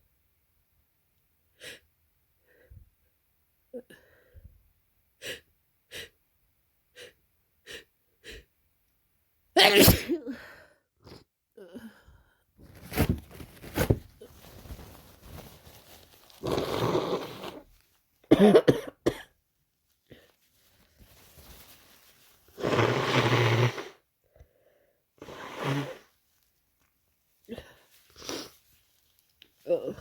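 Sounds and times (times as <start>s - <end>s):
person coughing: 9.6s - 10.4s, 18.3s - 19.4s
person sniffling: 27.5s - 28.6s.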